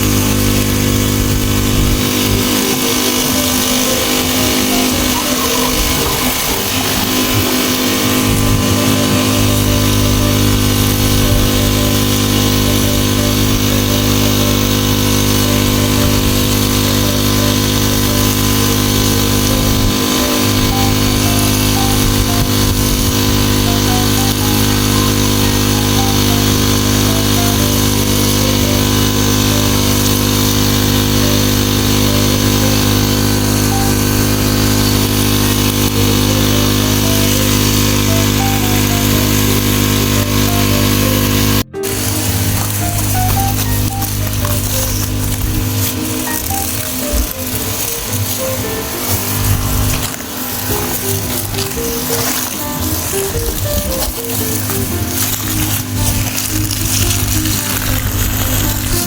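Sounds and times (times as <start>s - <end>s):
small engine droning: 0.0s - 59.0s.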